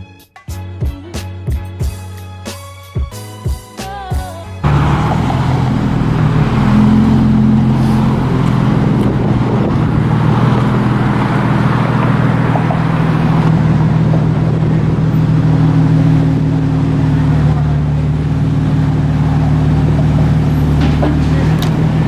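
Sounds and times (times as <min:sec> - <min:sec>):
car engine exhaust drone: 0:04.6 - 0:22.0.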